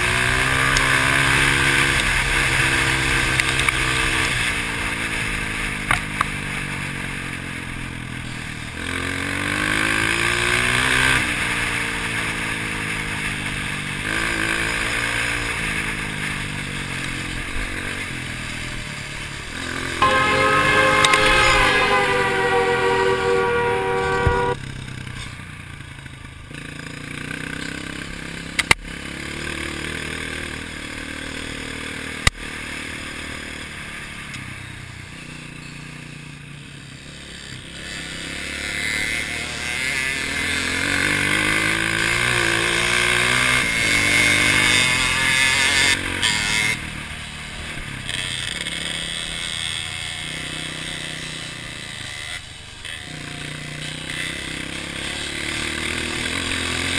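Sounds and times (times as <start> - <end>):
dirt bike engine revving: 19.2 - 24.6.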